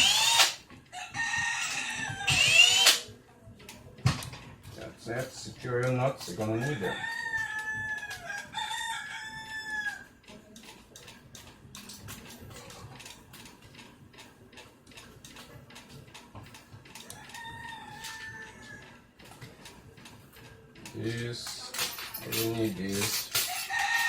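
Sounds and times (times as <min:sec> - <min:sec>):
rooster crowing: 0:00.9 - 0:02.8, 0:06.5 - 0:10.1, 0:17.1 - 0:19.0, 0:23.5 - 0:24.0.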